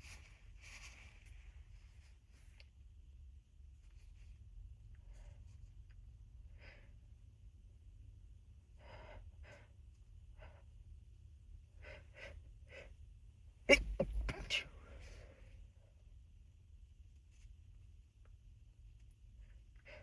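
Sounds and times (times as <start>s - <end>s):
person gasping: 13.7s - 15.0s
stifled sneeze: 13.7s - 15.0s.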